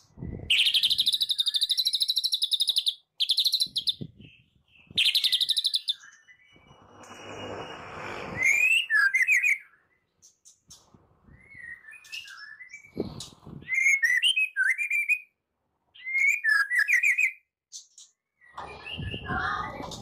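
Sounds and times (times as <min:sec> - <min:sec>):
bird whistling and trilling: 0:00.5 - 0:06.8, 0:08.4 - 0:10.1, 0:11.3 - 0:17.8, 0:18.4 - 0:19.6.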